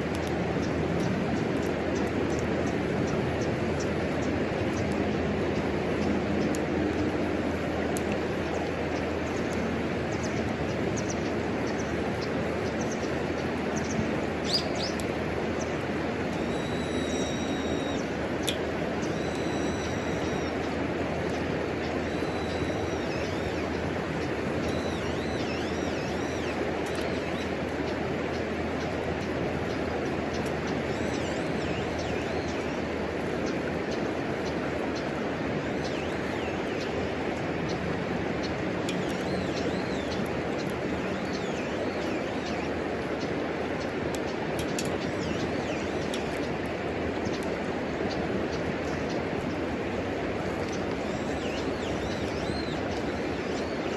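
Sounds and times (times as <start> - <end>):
wood stove fire crackling: 0.0 - 3.2
fire crackles: 0.0 - 36.4
birds chirping: 0.1 - 53.9
bird chirping: 16.4 - 27.5, 39.0 - 42.9, 50.7 - 53.9.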